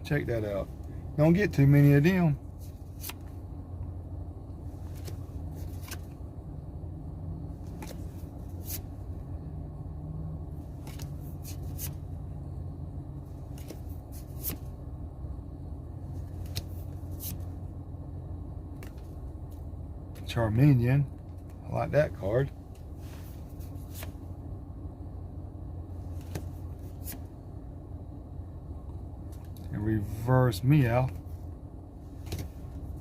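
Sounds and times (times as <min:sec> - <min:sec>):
steady low hum: 0:00.0 - 0:33.0
cards sliding and clicking: 0:02.6 - 0:03.4, 0:04.8 - 0:06.2, 0:07.6 - 0:09.0, 0:10.6 - 0:12.1, 0:13.3 - 0:14.8, 0:16.1 - 0:17.6, 0:18.8 - 0:19.6, 0:22.7 - 0:24.3, 0:26.0 - 0:27.3, 0:32.1 - 0:33.0.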